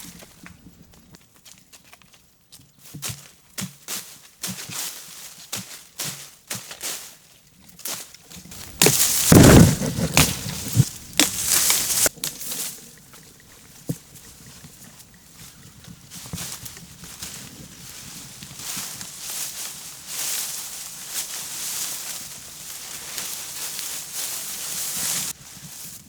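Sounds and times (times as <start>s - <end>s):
loud scraping and rustling: 8.3s - 12.7s, 17.4s - 26.0s.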